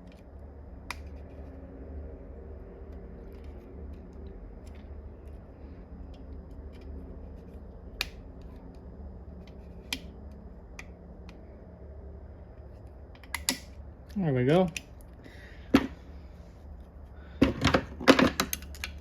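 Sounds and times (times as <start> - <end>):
steady low hum: 0.0 - 19.0
clicks of hand tools and metal parts: 17.3 - 19.0.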